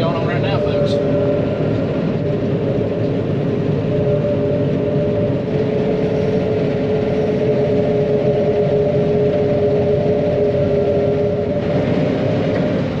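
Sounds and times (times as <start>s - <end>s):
combine machinery drone: 0.0s - 13.0s
steady whining tones: 0.0s - 13.0s.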